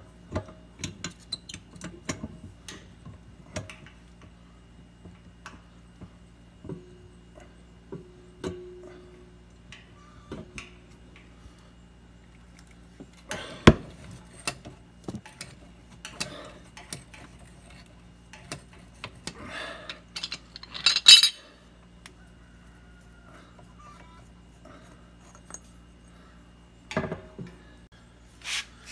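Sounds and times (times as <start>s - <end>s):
metal parts clinking and knocking: 20.0s - 21.4s
metal jangling: 20.2s - 21.4s.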